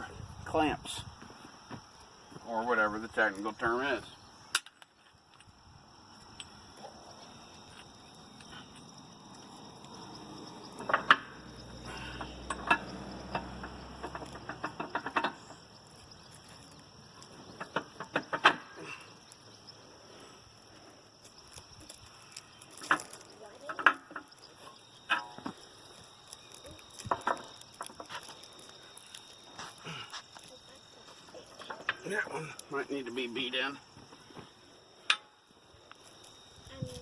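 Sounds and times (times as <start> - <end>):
metal clanks and knocks: 10.8 - 11.4, 12.4 - 15.6, 17.4 - 18.8.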